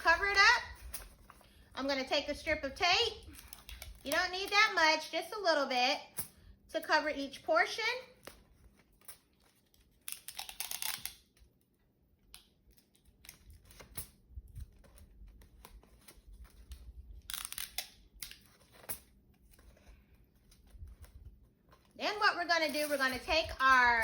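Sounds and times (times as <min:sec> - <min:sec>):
small clicks and handling noises: 0:03.2 - 0:04.7, 0:08.1 - 0:22.0
tape tearing: 0:03.2 - 0:04.7, 0:08.2 - 0:11.6, 0:14.8 - 0:19.2, 0:22.6 - 0:24.0
paper rustling: 0:18.4 - 0:24.0.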